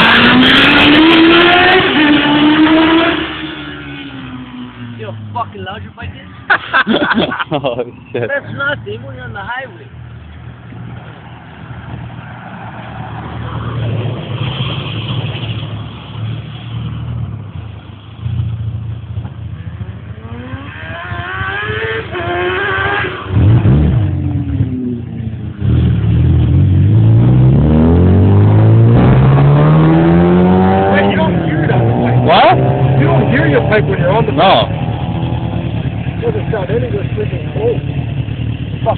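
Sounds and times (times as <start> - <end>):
motorcycle engine revving: 0.0 - 5.5, 19.6 - 38.9.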